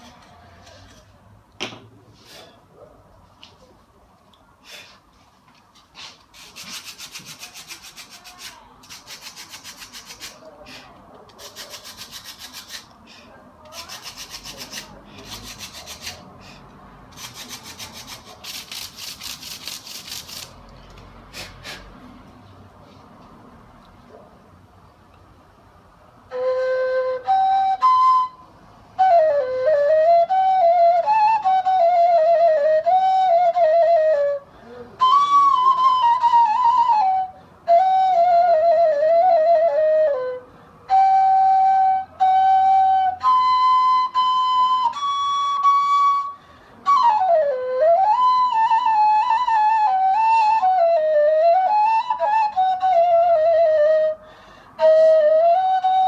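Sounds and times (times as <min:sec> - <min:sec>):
reed flute melody: 0:26.2 - 0:54.2, 0:54.8 - 0:56.0.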